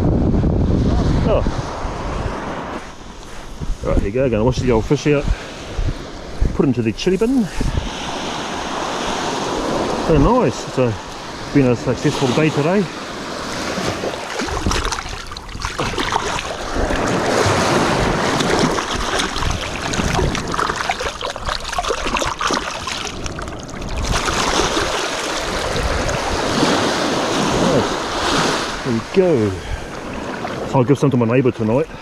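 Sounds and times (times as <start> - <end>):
wind on microphone: 0.0 - 31.0
sea water splashing: 7.6 - 32.0.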